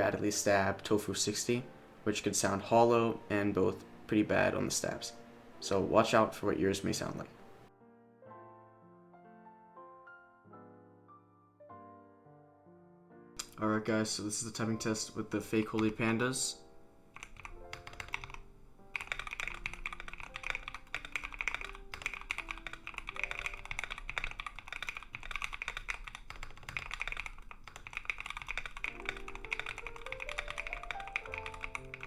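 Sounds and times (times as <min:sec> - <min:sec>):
background music: 0:00.0 - 0:25.5, 0:28.8 - 0:32.0
mechanical keyboard typing: 0:15.4 - 0:16.4, 0:17.2 - 0:32.0.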